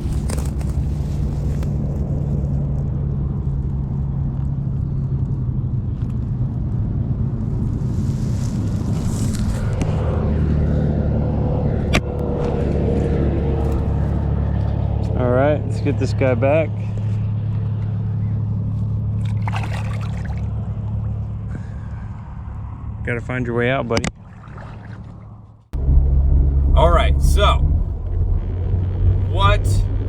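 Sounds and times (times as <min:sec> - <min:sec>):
low engine drone: 0:09.6 - 0:23.0, 0:25.2 - 0:30.0.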